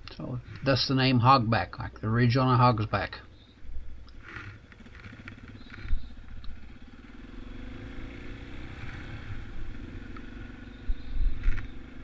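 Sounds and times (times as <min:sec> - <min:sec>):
motorcycle engine running: 0:03.3 - 0:12.0.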